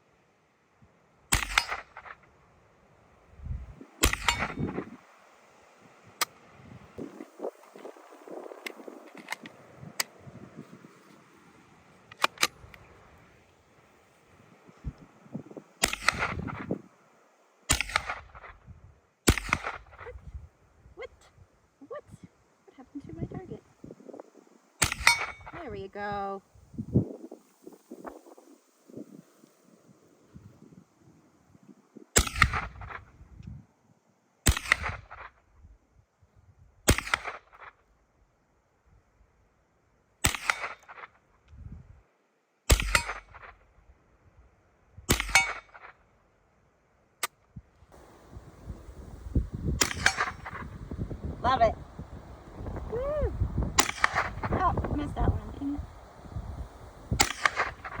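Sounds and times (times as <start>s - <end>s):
echoing gunshots: 48.0s - 51.0s, 53.7s - 55.1s, 56.7s - 58.0s
faint sharp cracks: 53.6s - 55.0s, 55.8s - 58.0s
gunshots with echo: 57.2s - 58.0s.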